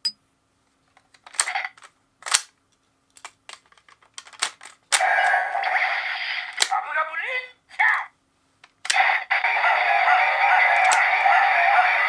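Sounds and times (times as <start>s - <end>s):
toy gun mechanism clicks: 1.2s - 2.6s, 3.2s - 5.5s, 6.5s - 6.8s, 8.8s - 9.2s, 10.8s - 11.2s.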